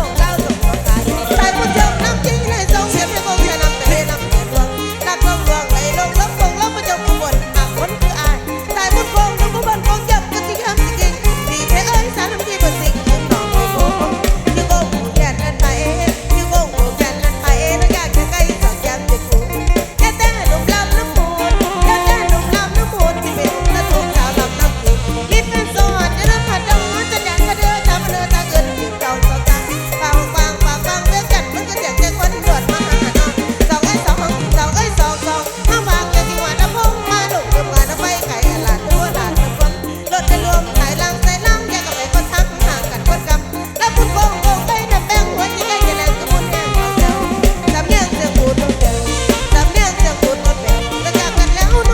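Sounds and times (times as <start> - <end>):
live band playing dance music: 0.0 - 51.9
heavy booming bass: 22.3 - 29.8.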